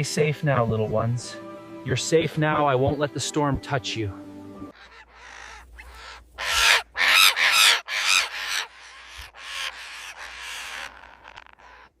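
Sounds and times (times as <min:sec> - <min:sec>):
parrots squawking: 0:04.7 - 0:12.0.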